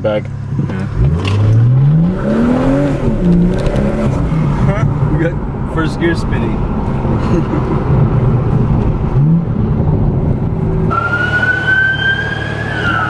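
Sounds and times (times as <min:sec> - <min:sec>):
car engine accelerating hard: 0:00.0 - 0:13.0
police siren wailing: 0:10.9 - 0:13.0.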